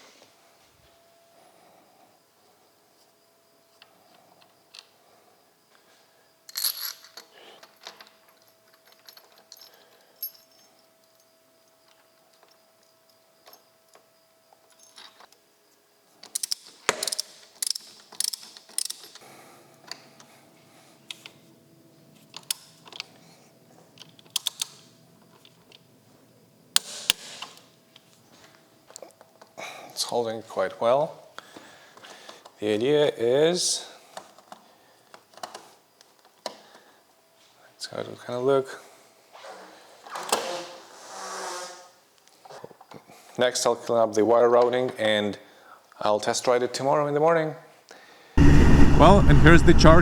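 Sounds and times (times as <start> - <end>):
metal parts and tools clinking: 6.5 - 11.3, 16.2 - 19.2.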